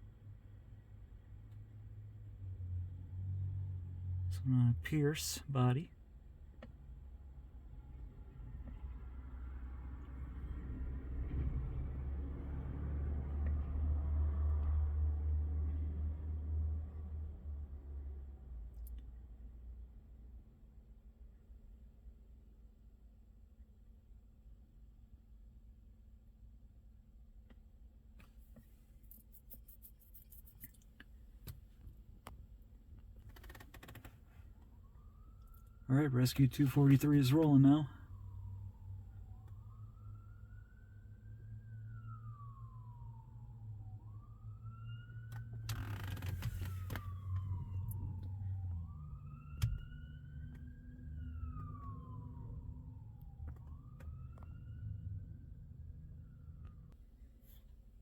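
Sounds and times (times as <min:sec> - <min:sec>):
fire truck siren wailing: 0:34.9 - 0:57.0.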